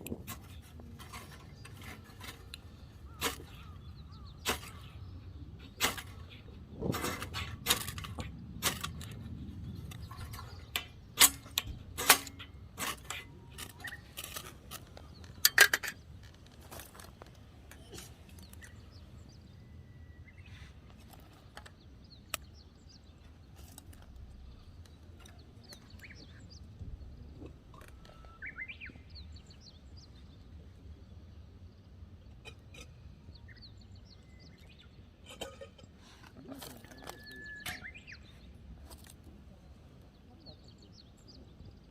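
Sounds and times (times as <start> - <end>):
faint bird chirps: 17.7 - 41.9.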